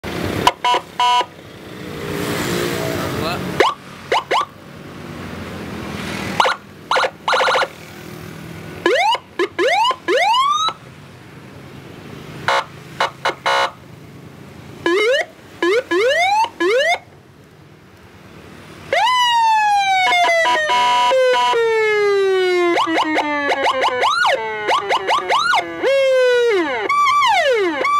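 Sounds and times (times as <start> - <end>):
buzzing horn blasts: 0.4 - 1.3, 12.4 - 13.8
electronic police siren: 0.6 - 1.3, 3.6 - 4.5, 6.4 - 7.7, 8.8 - 10.8, 14.8 - 17.1, 18.9 - 27.9.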